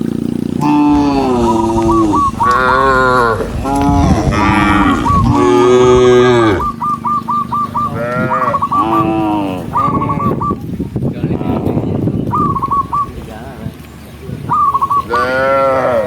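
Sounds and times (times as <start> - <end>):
cattle mooing: 0.6 - 6.8, 7.9 - 10.4, 15.1 - 16.0.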